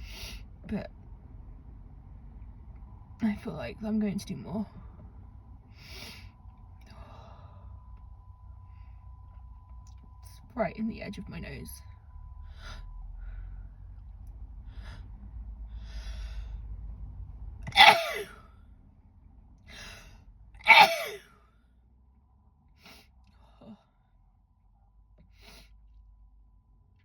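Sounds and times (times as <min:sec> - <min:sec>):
quiet breathing: 0:04.7 - 0:09.6, 0:12.2 - 0:16.9, 0:22.8 - 0:24.2
woman sneezing: 0:17.7 - 0:18.3, 0:20.7 - 0:21.2.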